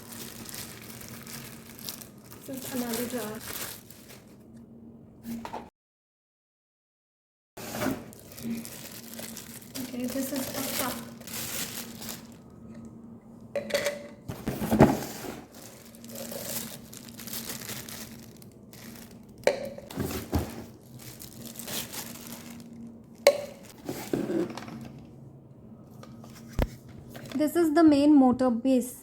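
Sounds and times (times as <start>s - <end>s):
plastic packaging crinkling: 0.0s - 4.5s, 7.6s - 12.8s, 14.4s - 24.9s.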